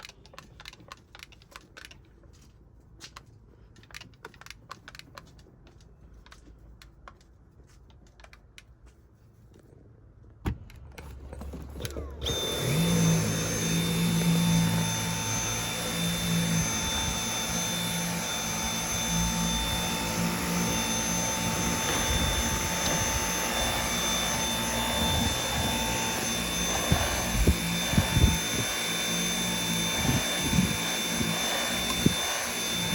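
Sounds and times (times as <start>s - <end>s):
vacuum cleaner motor whining: 11.8s - 32.9s.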